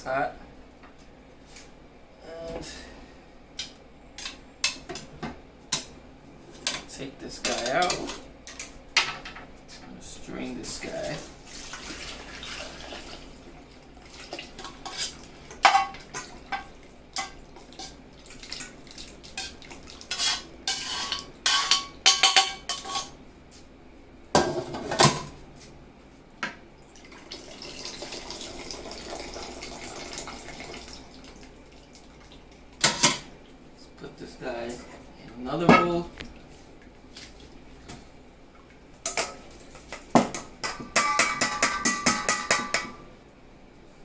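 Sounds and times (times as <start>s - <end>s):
pouring liquid: 11.5s - 14.4s, 27.0s - 32.6s
pots and bowls clinking: 19.4s - 23.2s, 39.0s - 43.1s.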